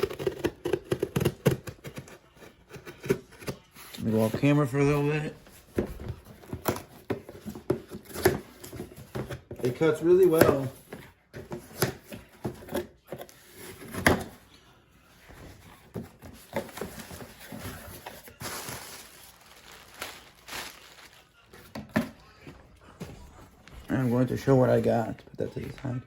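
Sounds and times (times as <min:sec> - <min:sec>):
knife cutting package: 0:00.0 - 0:04.4, 0:16.0 - 0:22.1.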